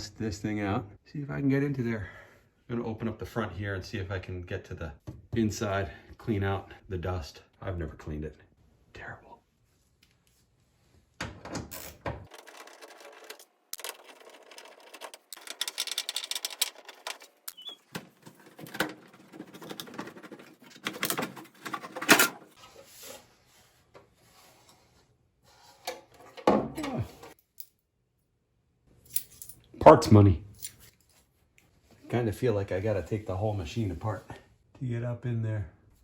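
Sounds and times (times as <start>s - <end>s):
metal panels clicking and rattling: 11.2s - 22.6s.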